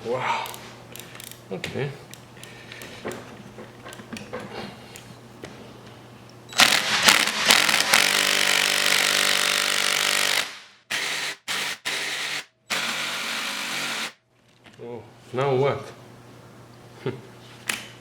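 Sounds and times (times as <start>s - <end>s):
power tool running: 6.5s - 14.2s.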